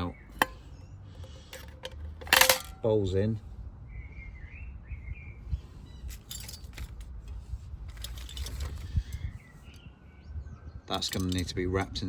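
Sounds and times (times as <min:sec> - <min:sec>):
metal pans clinking and rattling: 0:01.5 - 0:02.8.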